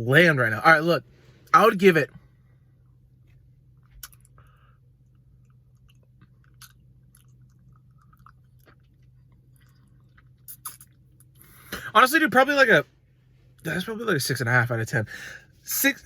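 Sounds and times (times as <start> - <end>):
low steady hum: 0.0 - 16.0
chewing and mouth clicks: 3.8 - 11.6.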